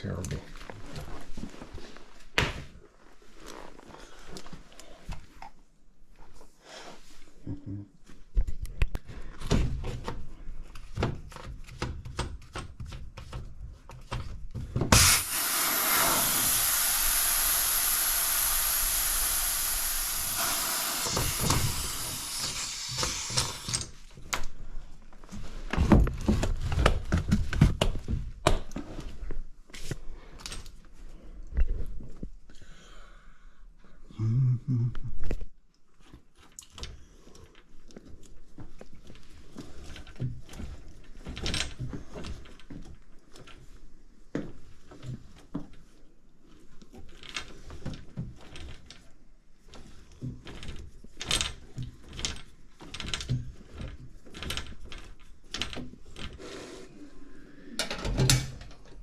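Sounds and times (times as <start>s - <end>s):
loud steady hiss: 14.9s - 23.9s.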